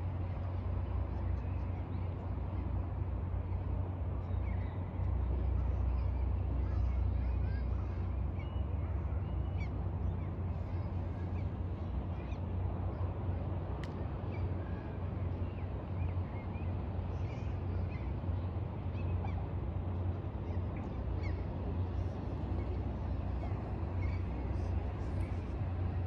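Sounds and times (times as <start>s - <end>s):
steady low rumble: 10.0s - 26.0s.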